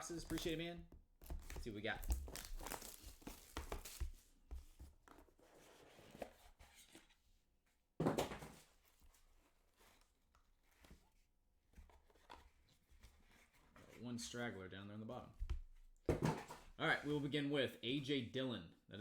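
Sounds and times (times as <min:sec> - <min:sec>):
packaging crinkling and rustling: 0:00.2 - 0:00.6, 0:01.2 - 0:04.4.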